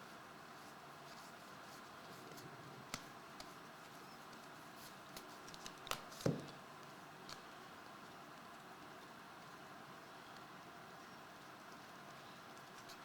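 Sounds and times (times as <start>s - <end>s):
trading cards being handled: 4.4s - 6.6s.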